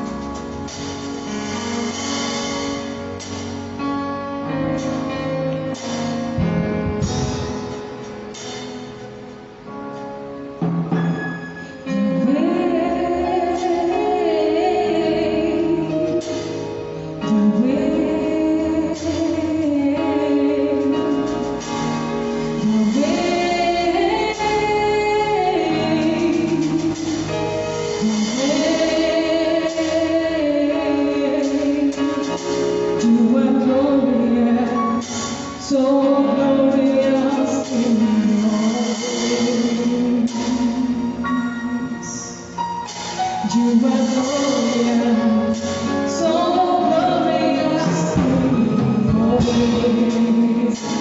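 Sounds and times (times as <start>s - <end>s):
instrumental accompaniment: 0.0s - 51.0s
woman singing: 11.9s - 16.4s, 17.2s - 21.4s, 22.6s - 27.4s, 28.0s - 32.4s, 33.0s - 42.5s, 43.4s - 51.0s.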